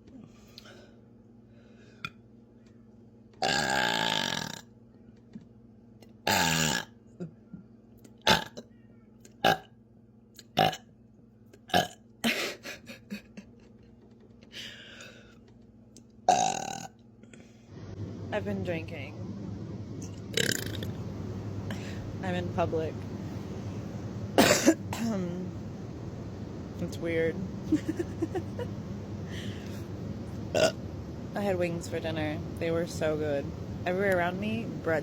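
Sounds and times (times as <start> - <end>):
woman burping: 3.4 - 4.6, 6.3 - 7.4, 8.2 - 8.6, 11.7 - 12.5, 16.3 - 16.9, 20.3 - 20.9, 24.4 - 25.2, 30.5 - 30.8.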